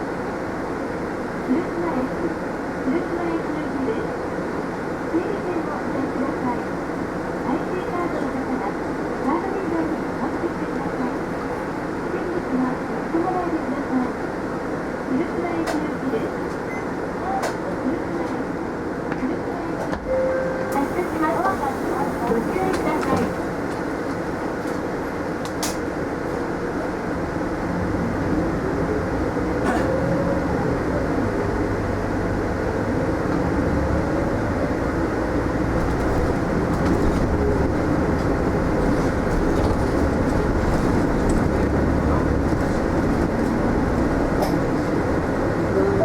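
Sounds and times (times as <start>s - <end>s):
bus engine and drivetrain: 0.0s - 46.0s.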